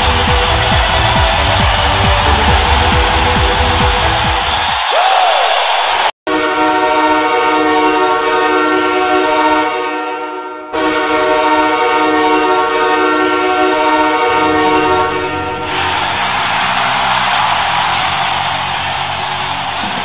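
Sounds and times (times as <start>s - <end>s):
music: 0.0s - 4.9s, 13.3s - 20.0s
hockey goal horn blast: 6.3s - 16.3s.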